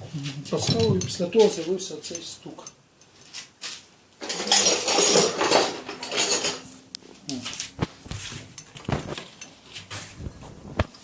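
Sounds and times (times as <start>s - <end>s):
metal tools clattering: 0.5s - 3.4s, 4.2s - 6.7s, 8.3s - 9.9s.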